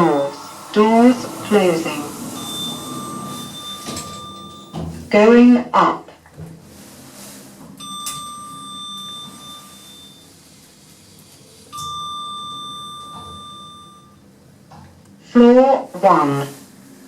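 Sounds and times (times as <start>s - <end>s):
lift chime ringing: 0.0s - 5.5s, 7.8s - 10.6s, 11.7s - 14.3s
lift car hum: 0.0s - 17.0s.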